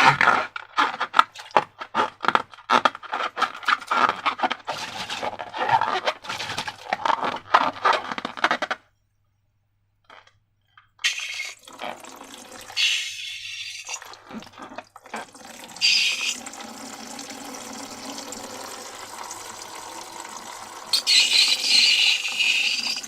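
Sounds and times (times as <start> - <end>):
liquid pouring into a container: 11.0 - 23.0.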